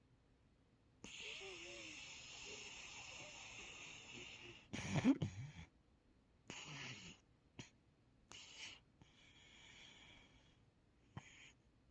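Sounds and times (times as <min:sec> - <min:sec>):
hissy breaths: 0:01.0 - 0:04.9, 0:06.5 - 0:11.6
dog snoring: 0:01.0 - 0:05.7, 0:06.5 - 0:07.7, 0:08.3 - 0:10.5, 0:11.1 - 0:11.5.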